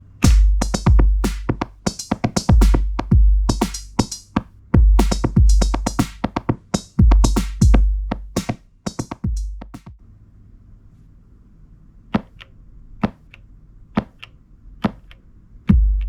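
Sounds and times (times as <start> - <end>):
deep kick drums: 0.2 - 1.8, 2.4 - 4.1, 4.8 - 10.0, 15.7 - 16.0.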